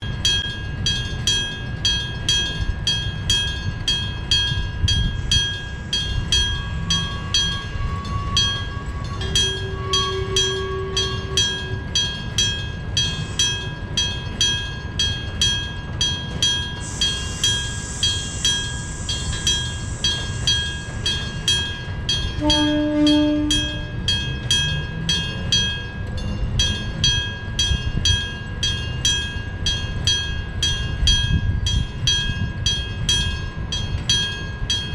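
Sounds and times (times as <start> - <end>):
train rumbling past: 0.0 - 34.9
train horn: 7.3 - 11.8, 22.4 - 24.0.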